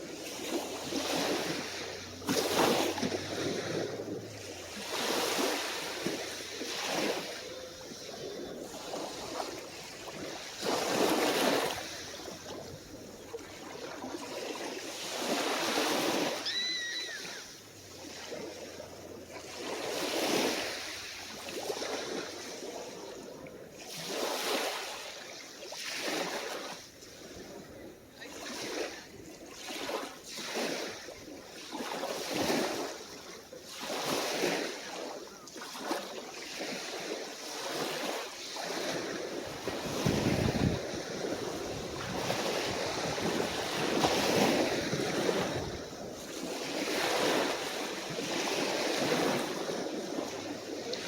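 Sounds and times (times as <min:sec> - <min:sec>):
wind buffeting microphone: 0:00.0 - 0:16.3, 0:38.7 - 0:51.0
small waves breaking on shore: 0:00.0 - 0:51.0.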